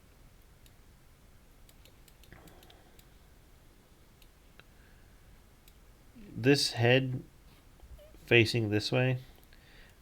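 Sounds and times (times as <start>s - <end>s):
faint computer clicks: 1.6s - 3.1s.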